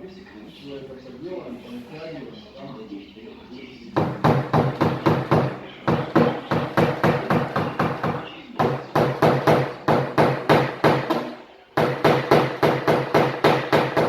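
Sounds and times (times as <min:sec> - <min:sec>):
hammer tapping sheet metal: 0:04.0 - 0:14.0.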